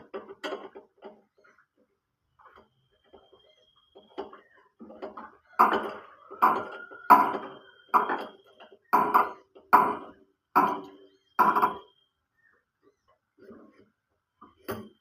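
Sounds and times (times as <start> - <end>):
sharp metallic knocks: 5.6 - 11.9.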